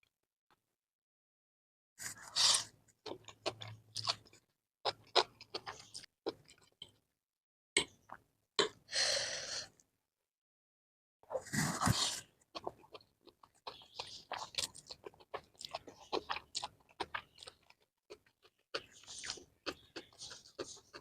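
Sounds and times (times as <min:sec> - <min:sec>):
noodles slurped and chewed: 0:02.0 - 0:07.0, 0:11.3 - 0:21.0.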